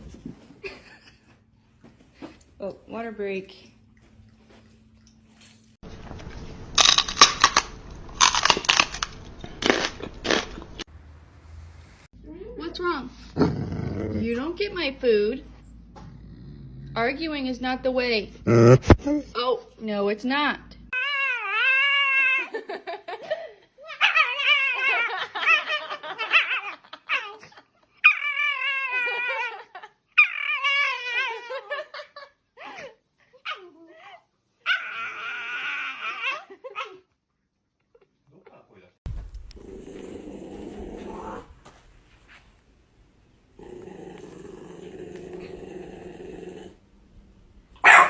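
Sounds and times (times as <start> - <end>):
dog growling: 13.3 - 14.4, 15.8 - 17.2, 18.3 - 19.3, 39.5 - 41.6, 43.5 - 46.8
dog whining: 20.9 - 22.5, 33.5 - 37.0.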